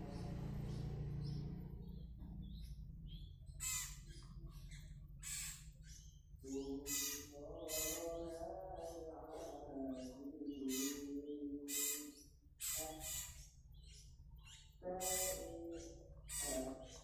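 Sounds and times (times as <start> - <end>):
songbirds calling: 0.0 - 17.0
harsh rasping bird squawks: 3.5 - 4.2, 5.2 - 6.0, 6.8 - 8.2, 10.6 - 17.0.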